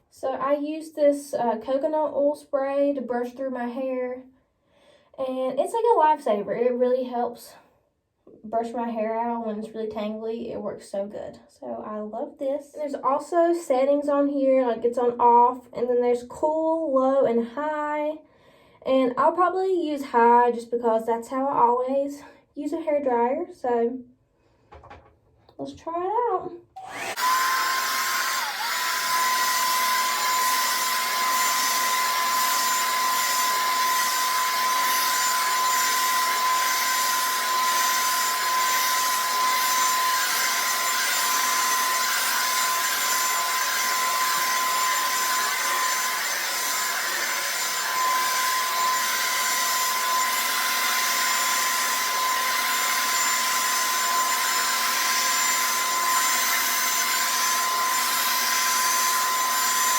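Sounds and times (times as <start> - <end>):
hair dryer running: 26.8 - 59.9.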